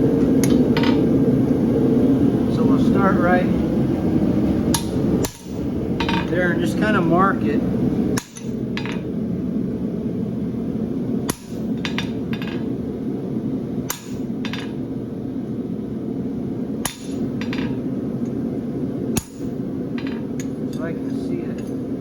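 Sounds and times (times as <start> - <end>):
steady low hum: 0.0 - 22.0
hammer striking metal on anvil: 4.7 - 6.3, 8.2 - 9.0, 11.3 - 12.7, 13.9 - 14.8, 16.8 - 17.8, 19.2 - 20.5.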